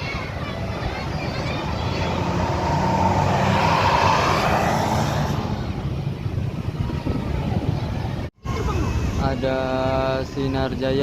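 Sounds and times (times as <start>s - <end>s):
bus driving past: 0.0s - 7.5s.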